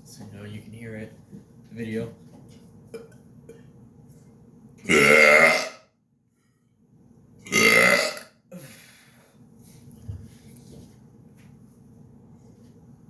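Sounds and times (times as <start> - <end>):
man burping: 4.9 - 5.8, 7.5 - 8.3.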